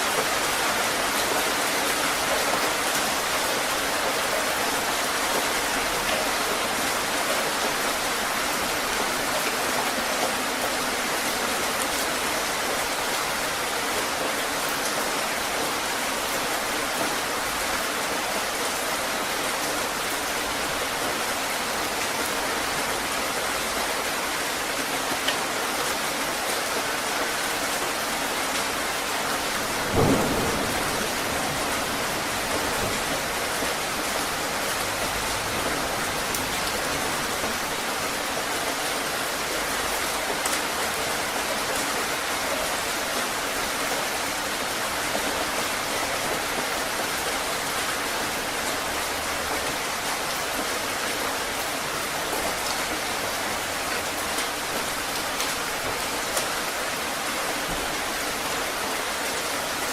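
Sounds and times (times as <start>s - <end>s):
heavy rain falling: 0.0s - 59.9s
thunder clap: 29.6s - 37.4s.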